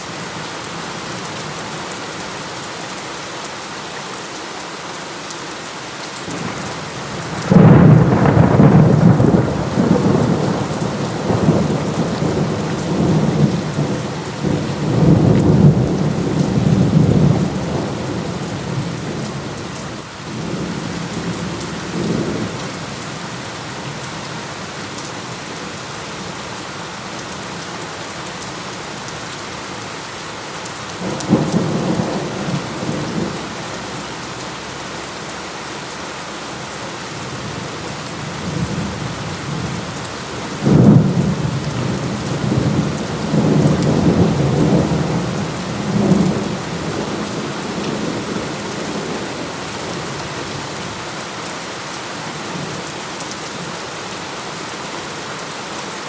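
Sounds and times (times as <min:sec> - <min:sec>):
heavy rain falling: 0:00.0 - 0:56.0
thunder rumbling: 0:06.3 - 0:19.7, 0:31.0 - 0:34.1, 0:37.2 - 0:51.0.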